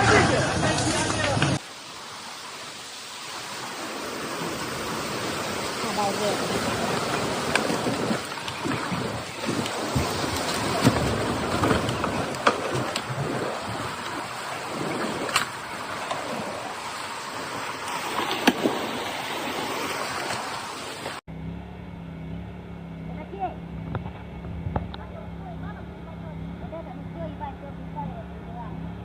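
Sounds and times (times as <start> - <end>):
floodwater torrent rushing: 0.0 - 21.2
low steady hum: 21.3 - 29.0.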